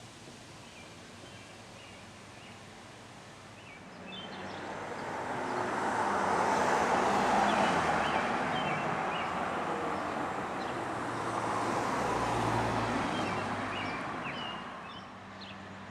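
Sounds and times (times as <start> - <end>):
small birds chirping: 3.5 - 5.7, 7.4 - 15.7
road vehicle passing: 3.9 - 15.9.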